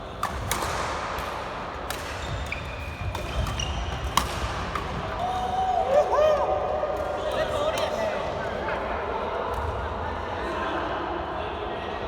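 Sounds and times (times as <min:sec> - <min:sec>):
racket striking shuttlecock: 0:00.2 - 0:05.1
shoe squeaks on court floor: 0:02.2 - 0:04.1.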